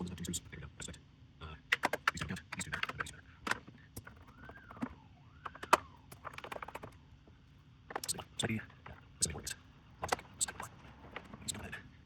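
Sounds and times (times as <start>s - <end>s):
small clicks and taps of parts: 1.7s - 7.0s, 7.9s - 11.7s.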